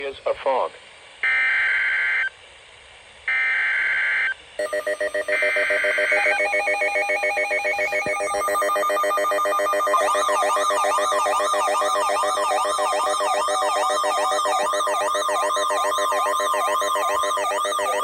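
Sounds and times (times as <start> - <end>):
buzzing digital warble: 4.6 - 18.0
synthesizer tones: 4.6 - 18.0.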